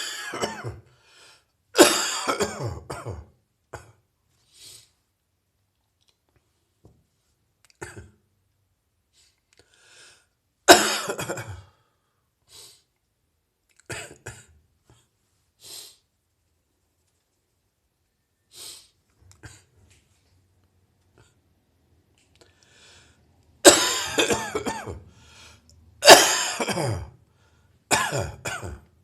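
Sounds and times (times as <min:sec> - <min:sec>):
person coughing: 0:00.0 - 0:00.9, 0:01.8 - 0:04.0, 0:10.7 - 0:11.8, 0:13.9 - 0:14.6, 0:23.6 - 0:25.1, 0:26.0 - 0:27.2, 0:27.9 - 0:28.9
faint breaths: 0:09.1 - 0:10.4, 0:22.3 - 0:23.4, 0:25.0 - 0:25.8.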